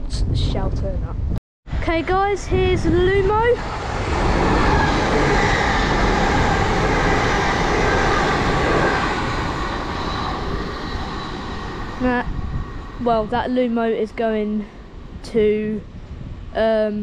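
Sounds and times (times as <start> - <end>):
electric train passing: 1.7 - 16.5.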